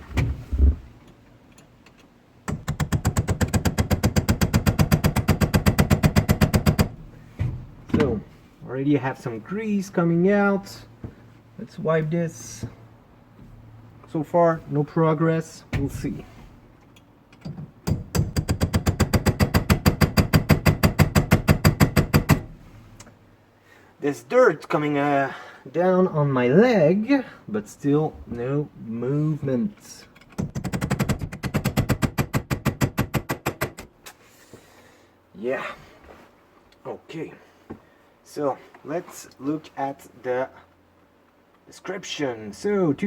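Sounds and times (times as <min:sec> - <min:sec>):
hammer tapping metal punch: 0:17.4 - 0:22.4.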